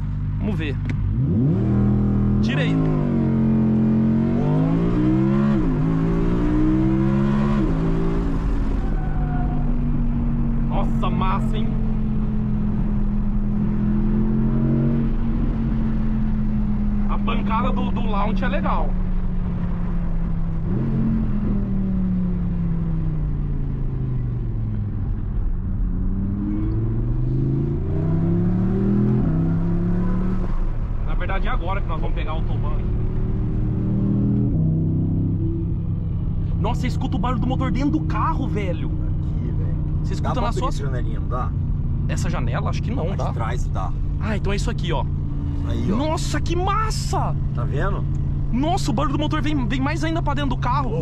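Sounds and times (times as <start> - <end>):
engine accelerating with upshifts: 0.0 - 51.0.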